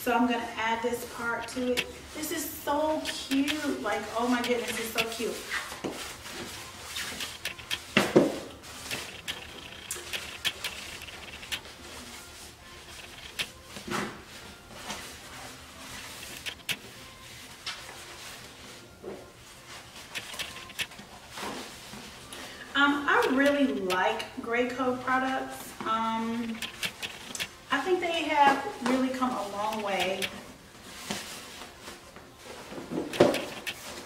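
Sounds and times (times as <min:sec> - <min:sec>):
plastic chair parts clicking: 0:01.4 - 0:02.0, 0:03.0 - 0:03.7, 0:04.4 - 0:05.2, 0:07.0 - 0:11.8, 0:12.9 - 0:13.6, 0:16.1 - 0:16.9, 0:20.1 - 0:21.1, 0:23.1 - 0:24.1, 0:26.4 - 0:27.6, 0:29.7 - 0:30.4, 0:33.0 - 0:34.0.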